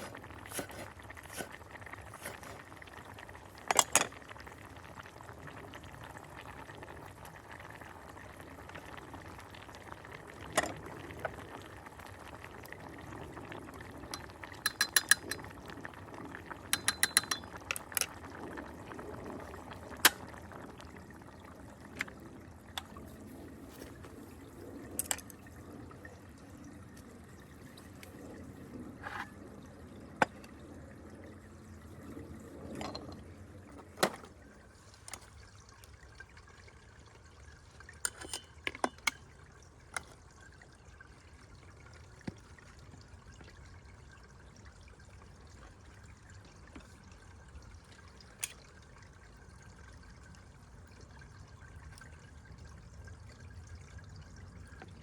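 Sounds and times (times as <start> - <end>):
liquid being poured: 0.0 - 55.0
utensil clinking against pot: 3.6 - 4.2, 14.1 - 15.5, 16.7 - 18.2, 38.0 - 39.3.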